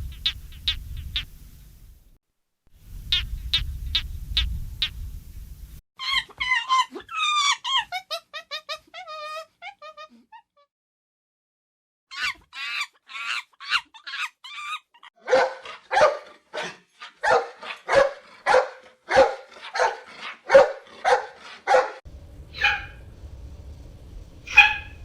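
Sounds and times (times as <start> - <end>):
dog barking: 15.2 - 22.0, 22.6 - 23.0, 24.5 - 25.0.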